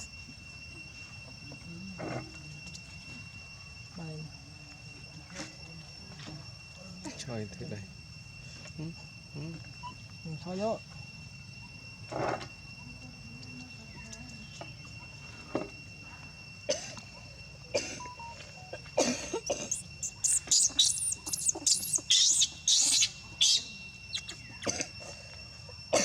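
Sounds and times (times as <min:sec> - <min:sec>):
baby monkey screaming: 0:19.3 - 0:24.7.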